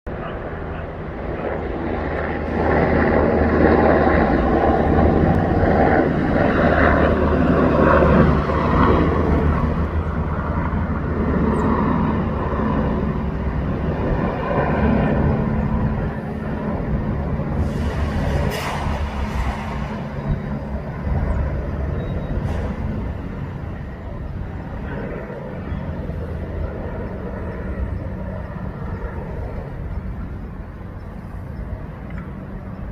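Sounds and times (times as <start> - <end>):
helicopter flying overhead: 0.1 - 32.9.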